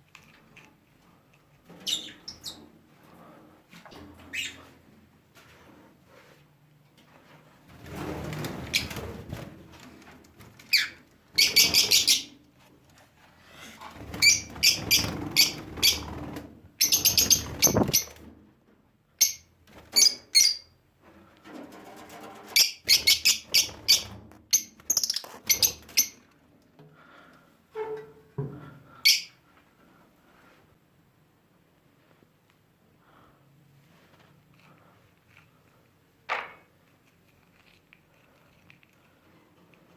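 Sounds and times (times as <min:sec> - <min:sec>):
wing flapping: 0:14.0 - 0:18.2.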